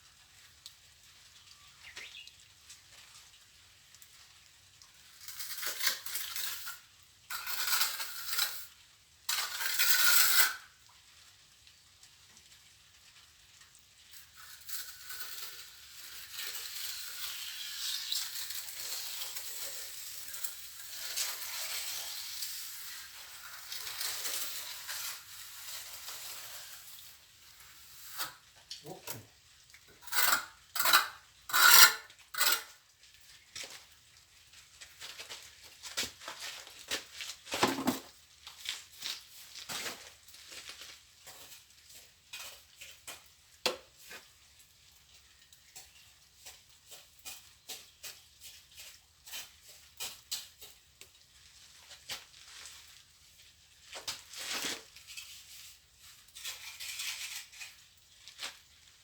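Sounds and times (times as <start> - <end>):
trowel scraping mortar on wall: 5.2 - 10.7, 14.5 - 29.2, 29.9 - 32.8, 35.4 - 44.4, 45.7 - 59.0.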